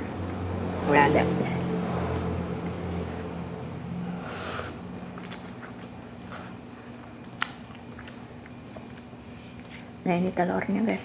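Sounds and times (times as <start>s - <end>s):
faint low hum: 0.0s - 11.0s
person chewing noodles: 4.0s - 9.9s.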